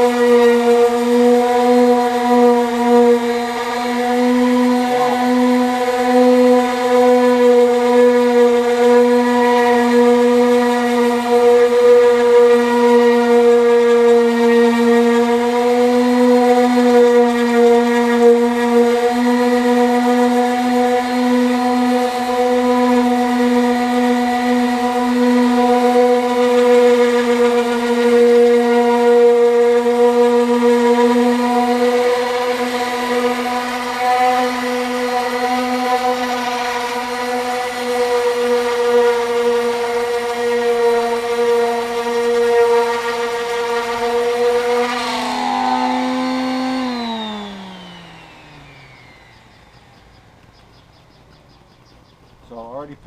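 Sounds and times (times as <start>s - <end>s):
power tool running steadily: 0.0s - 52.8s.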